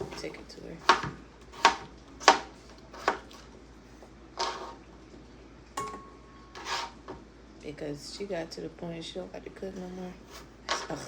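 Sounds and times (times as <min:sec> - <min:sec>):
struck pot ringing: 0:05.8 - 0:06.6
dishes and utensils clinking: 0:05.8 - 0:07.0.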